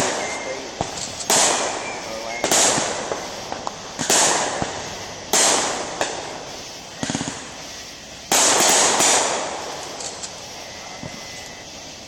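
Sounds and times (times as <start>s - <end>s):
fireworks booming: 0.0s - 12.0s
small crackling pops: 0.8s - 6.3s.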